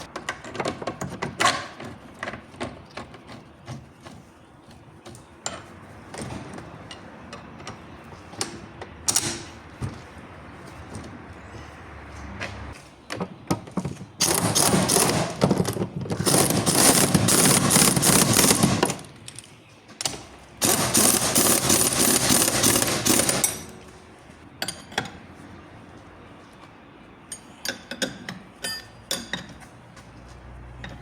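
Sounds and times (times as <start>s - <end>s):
impact wrench hammering: 14.2s - 15.6s, 16.2s - 19.0s, 20.6s - 23.8s.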